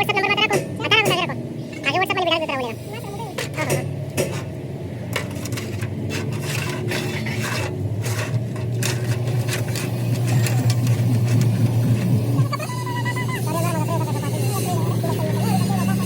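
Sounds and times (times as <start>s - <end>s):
low machine hum: 0.0s - 16.0s
metal scraping and clinking: 3.3s - 16.0s.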